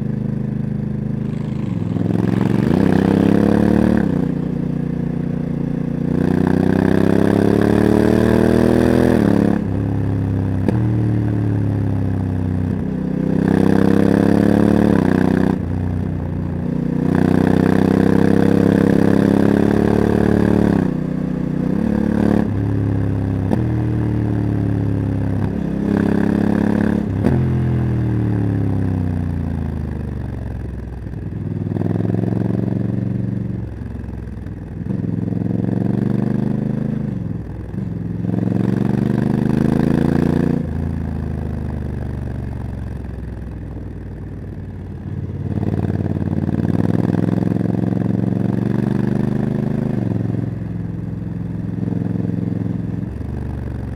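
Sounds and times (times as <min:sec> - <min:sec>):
motorcycle engine accelerating: 0:00.0 - 0:53.9.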